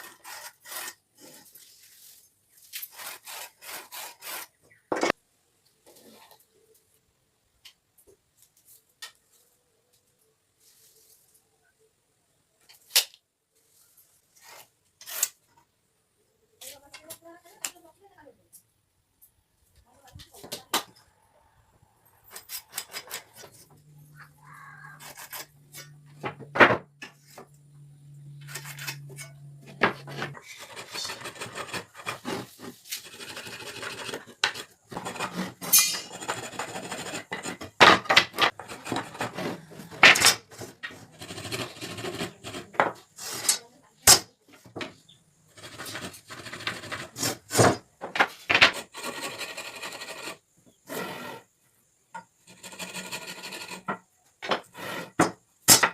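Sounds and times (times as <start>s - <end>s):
rasping and scraping on wood: 0.0s - 4.6s, 22.3s - 26.4s, 28.4s - 43.6s, 45.5s - 47.8s, 48.5s - 51.5s, 52.2s - 55.4s.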